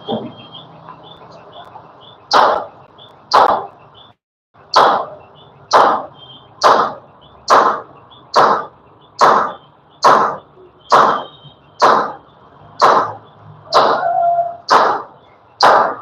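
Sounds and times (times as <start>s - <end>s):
hammer blows: 4.7s - 16.0s.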